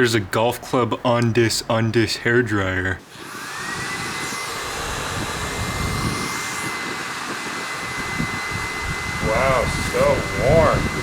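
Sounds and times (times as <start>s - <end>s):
hair dryer motor whine: 3.0s - 11.0s
rush of blown air: 3.4s - 11.0s.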